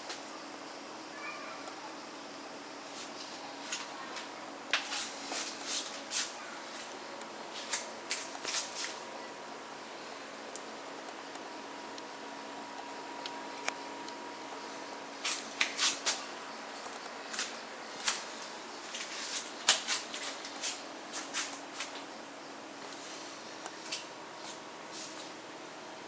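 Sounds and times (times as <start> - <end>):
faint steady hum: 0.0 - 26.0.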